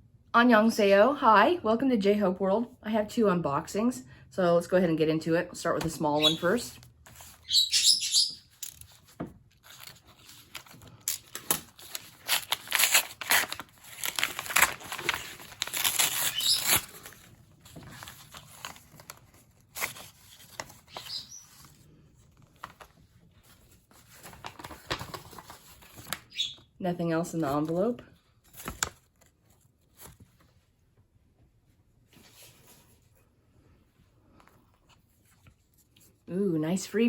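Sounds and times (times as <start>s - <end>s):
paper packaging rustling: 7.0s - 7.5s, 8.5s - 26.4s, 28.4s - 30.6s
envelope tearing: 8.6s - 17.3s, 17.9s - 21.7s, 24.1s - 26.2s, 28.5s - 30.1s.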